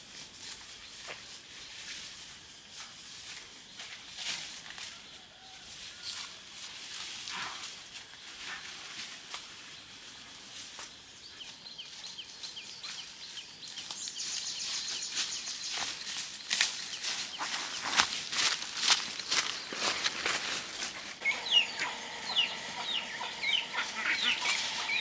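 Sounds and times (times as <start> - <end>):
bird chirping: 10.9 - 25.0.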